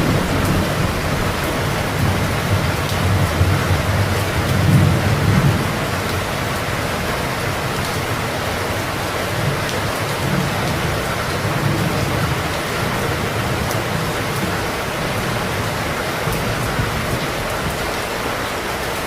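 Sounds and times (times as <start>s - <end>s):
steady rain falling: 0.0s - 19.0s.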